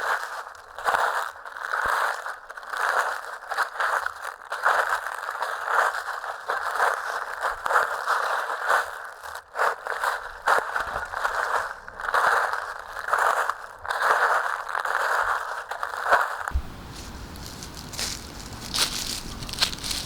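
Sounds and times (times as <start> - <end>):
footsteps crunching through leaves: 4.2 - 20.0.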